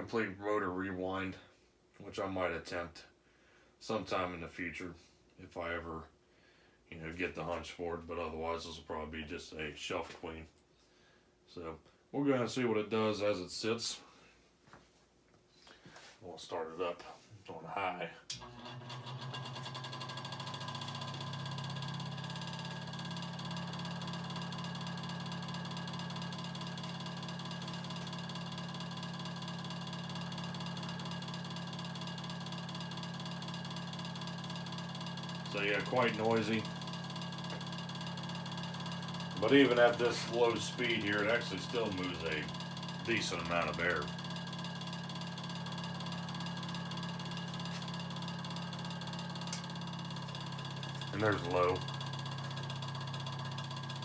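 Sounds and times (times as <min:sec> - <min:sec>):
fan motor humming: 0:18.3 - 0:54.0.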